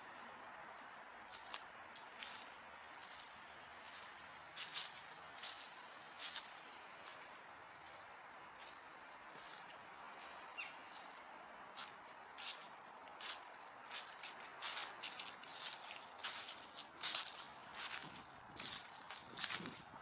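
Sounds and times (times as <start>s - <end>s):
crunching footsteps on a path: 0.0s - 20.0s
faint outdoor hiss: 0.0s - 20.0s
bird chirp: 10.2s - 11.2s.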